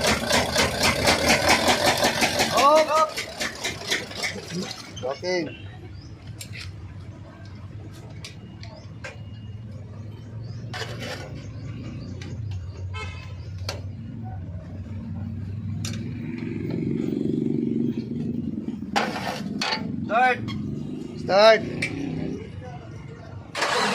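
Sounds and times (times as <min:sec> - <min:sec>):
diesel engine droning: 0:13.6 - 0:23.9.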